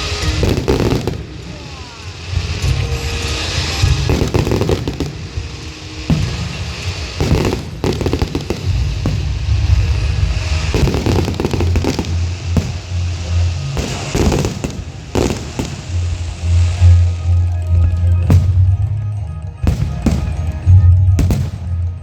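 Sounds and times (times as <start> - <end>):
fireworks bangs and crackle: 0.0 - 22.0
loud music with heavy bass: 7.2 - 12.8, 13.5 - 22.0.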